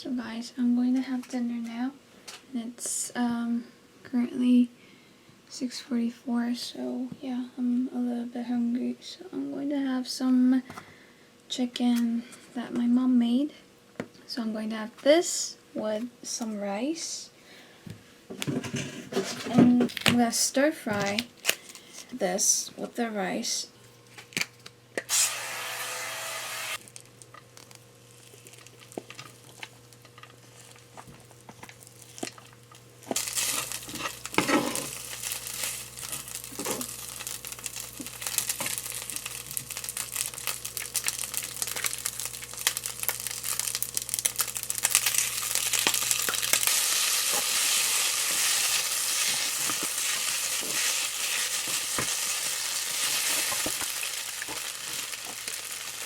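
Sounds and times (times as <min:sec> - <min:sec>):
food sizzling in a pan: 0:25.1 - 0:27.0, 0:31.8 - 0:56.0
stirring clicks and scrapes: 0:26.8 - 0:35.0.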